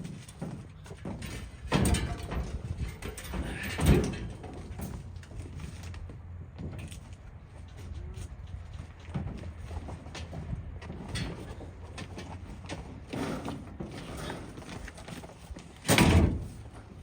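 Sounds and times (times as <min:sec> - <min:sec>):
scrap metal scraping clatter: 0:00.0 - 0:05.9, 0:11.0 - 0:17.0.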